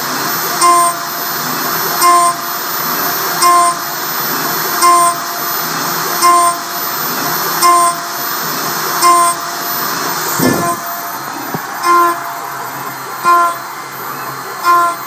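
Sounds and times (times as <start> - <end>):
cutter whine: 0.0 - 15.0
milling machine whirring: 0.0 - 15.0.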